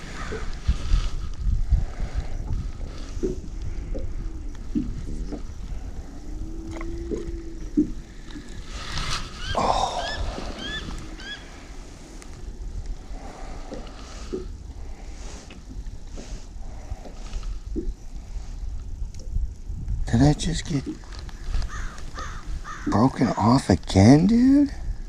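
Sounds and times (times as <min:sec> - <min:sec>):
wind rumble on microphone: 0:00.0 - 0:25.0
rising bird chirps: 0:09.3 - 0:11.5.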